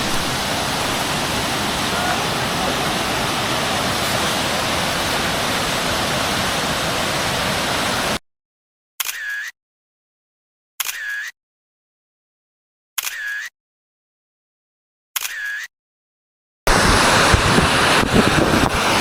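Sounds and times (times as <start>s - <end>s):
waterfall rushing: 0.0s - 8.2s, 16.7s - 19.0s.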